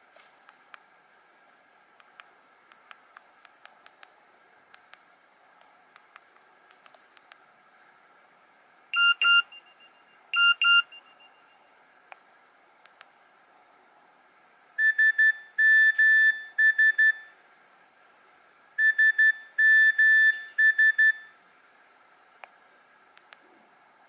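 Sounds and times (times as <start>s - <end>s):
phone ringtone beeps: 18.8s - 21.3s
faint clicks: 22.4s - 23.5s.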